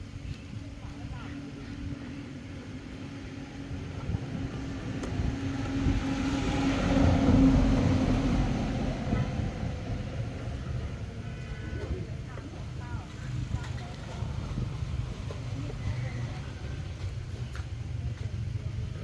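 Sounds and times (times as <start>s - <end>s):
vehicle engine passing by: 3.2s - 12.2s.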